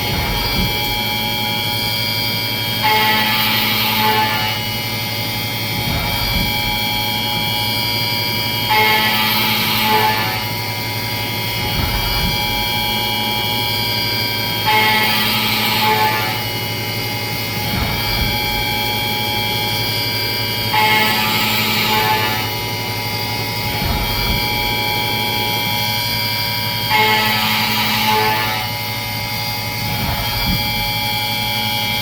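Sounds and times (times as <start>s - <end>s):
end mill cutting aluminum: 0.0s - 32.0s
milling machine spindle whine: 0.0s - 32.0s.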